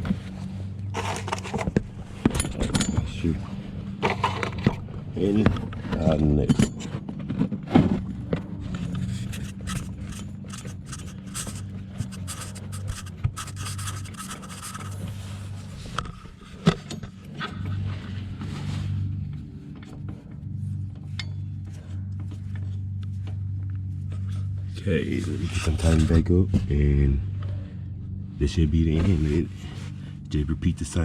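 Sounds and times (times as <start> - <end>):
steady low hum: 0.0 - 31.0
hand tools scraping and clicking: 1.0 - 3.1, 4.0 - 4.8, 8.8 - 15.2.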